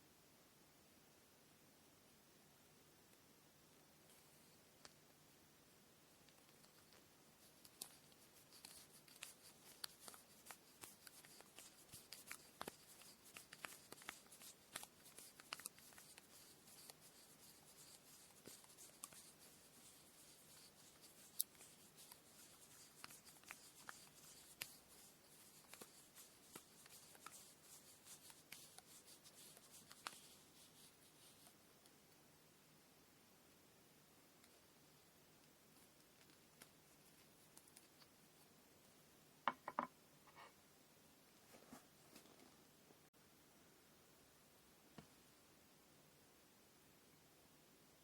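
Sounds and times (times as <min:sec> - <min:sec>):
thread rustling: 0:06.3 - 0:31.6.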